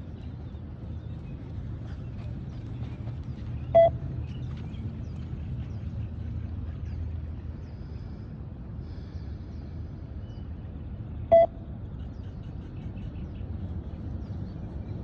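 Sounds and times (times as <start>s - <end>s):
low outdoor rumble: 0.0s - 15.0s
short electronic beep: 3.8s - 4.0s, 11.3s - 11.5s.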